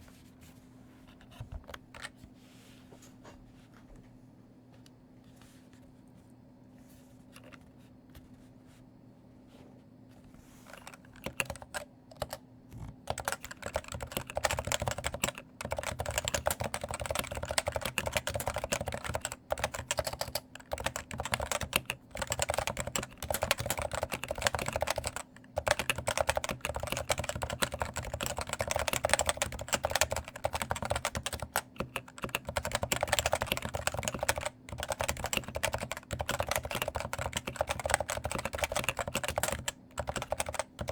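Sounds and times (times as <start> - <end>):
keycaps rattling: 10.7 - 12.4, 13.0 - 40.9
typing on a keyboard: 10.7 - 12.4, 13.1 - 40.9.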